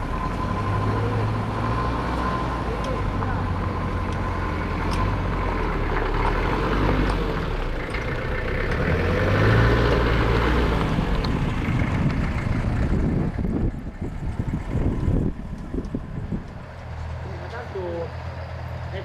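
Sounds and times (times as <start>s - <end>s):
tractor engine running: 0.0s - 19.0s.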